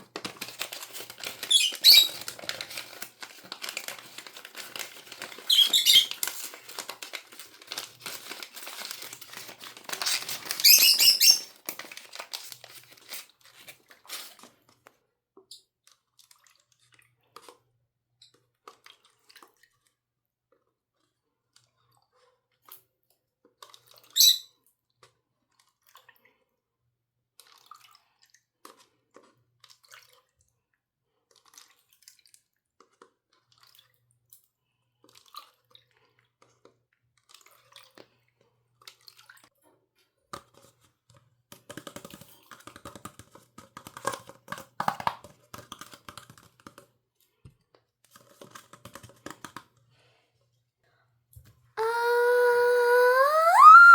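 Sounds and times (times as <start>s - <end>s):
crackly rustling and crinkling: 0.0s - 15.0s, 40.0s - 50.0s
parrot shrill calls: 1.5s - 2.2s, 5.5s - 6.1s, 10.6s - 11.5s, 51.8s - 53.9s.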